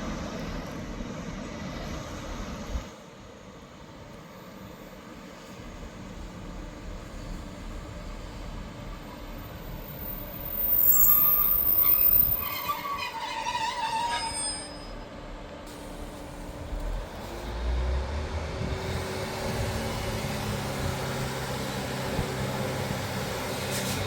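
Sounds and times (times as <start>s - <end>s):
low train rumble: 0.0s - 24.0s
train wheels rushing on rail: 0.0s - 24.0s
wheels squealing: 10.4s - 15.0s.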